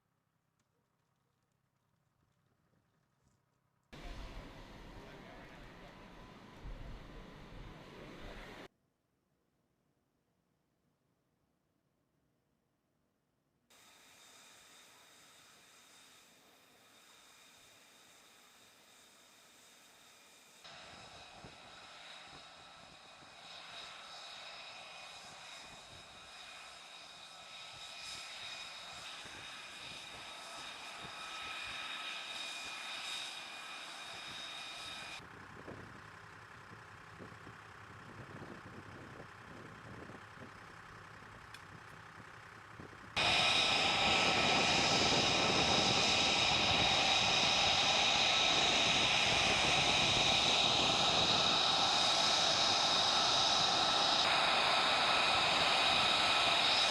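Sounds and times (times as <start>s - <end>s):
jet engine whining: 4.0s - 8.7s, 13.8s - 36.0s, 42.8s - 56.9s.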